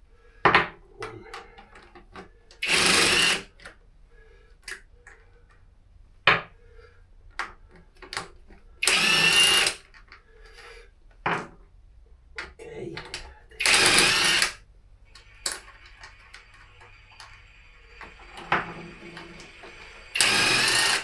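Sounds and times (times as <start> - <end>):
cordless impact wrench running: 2.6 - 3.5, 8.8 - 9.8, 13.6 - 14.6, 19.3 - 21.0
sharp metal clicks: 20.2 - 21.0.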